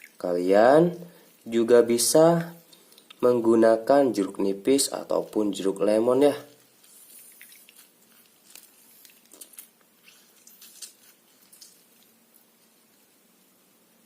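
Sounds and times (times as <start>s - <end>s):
lime being squeezed by hand: 6.8s - 12.2s.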